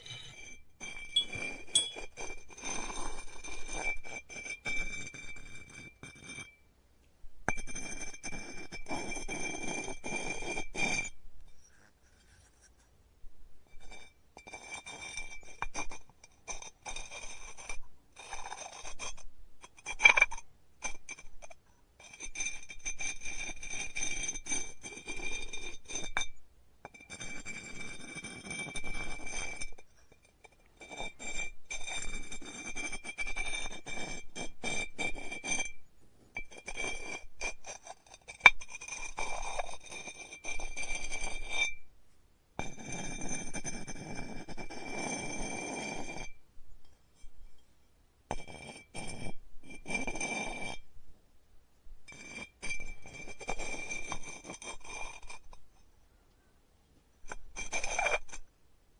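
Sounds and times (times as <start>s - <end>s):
sharp clink: 0.0s - 0.4s, 1.1s - 2.1s
tools scraping on clay: 0.0s - 6.5s, 14.4s - 21.2s, 36.4s - 41.4s, 52.1s - 55.6s, 57.3s - 58.4s.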